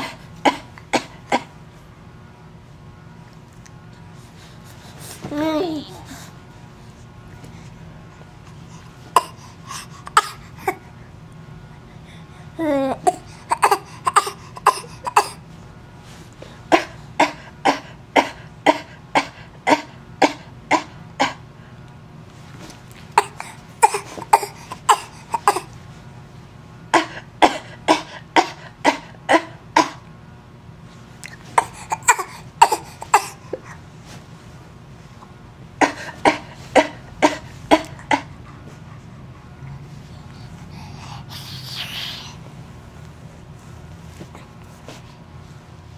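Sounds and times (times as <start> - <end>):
person fake coughing: 0.0 - 1.6, 9.2 - 9.4, 13.0 - 15.4, 16.7 - 21.4, 23.2 - 25.7, 26.9 - 30.0, 31.6 - 33.6, 35.8 - 38.3.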